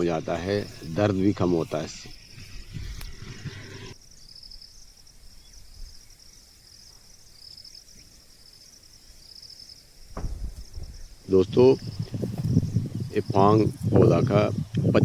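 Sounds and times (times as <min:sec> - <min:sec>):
insects trilling: 0:00.0 - 0:15.0
low rumbling noise: 0:10.2 - 0:13.2.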